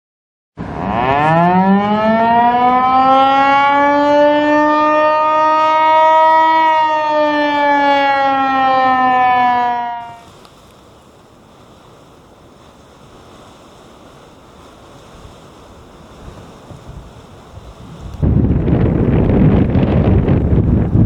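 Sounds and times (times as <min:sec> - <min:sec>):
warning siren winding up: 0:00.6 - 0:10.3.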